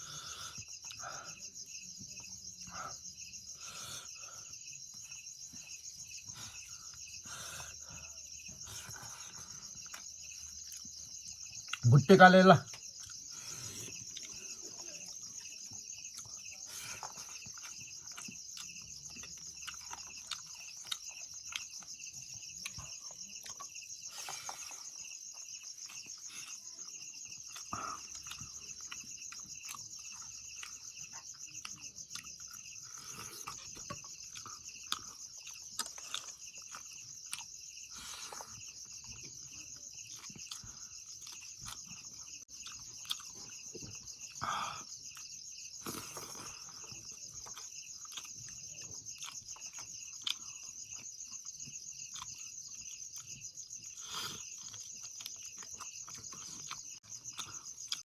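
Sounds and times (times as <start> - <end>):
insects trilling: 0.0 - 58.0.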